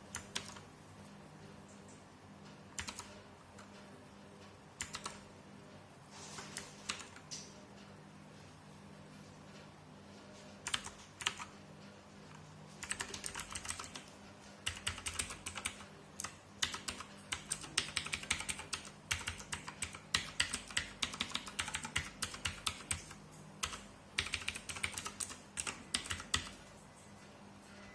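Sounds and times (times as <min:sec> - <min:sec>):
clicky mechanical keyboard typing: 0:00.1 - 0:00.6, 0:02.8 - 0:03.9, 0:04.8 - 0:05.3, 0:06.4 - 0:07.6, 0:10.6 - 0:11.6, 0:12.3 - 0:26.6.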